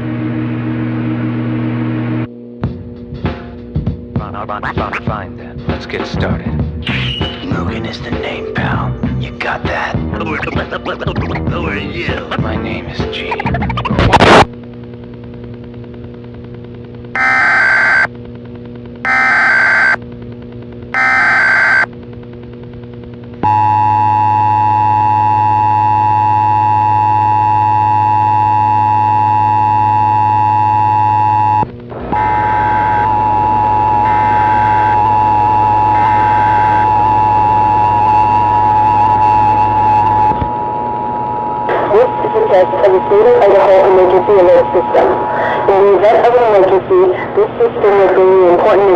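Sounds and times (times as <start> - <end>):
low hum: 12.9 - 48.9
data bursts: 13.2 - 14.4, 17.2 - 18.1, 19.0 - 20.0, 20.9 - 21.9
steady tone: 17.1 - 48.6
two-tone attention signal: 17.2 - 18.1, 19.1 - 20.0, 21.0 - 21.9, 23.4 - 45.3.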